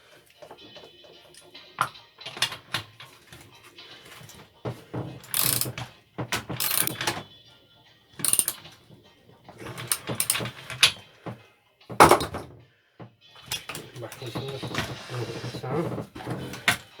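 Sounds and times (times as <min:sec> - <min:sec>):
metal wrench clicking and rattling: 0:05.2 - 0:05.8, 0:06.6 - 0:07.1, 0:08.2 - 0:08.6, 0:09.8 - 0:10.6.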